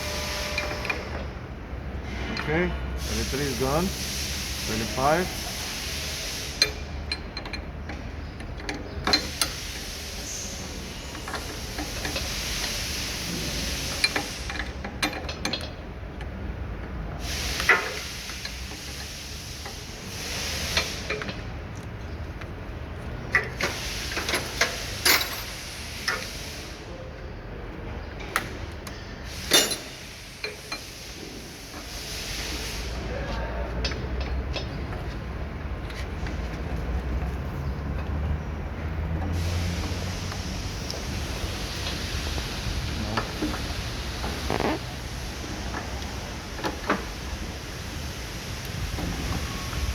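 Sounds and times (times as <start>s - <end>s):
steady hiss: 3.0s - 6.8s, 9.2s - 14.7s, 39.3s - 49.9s.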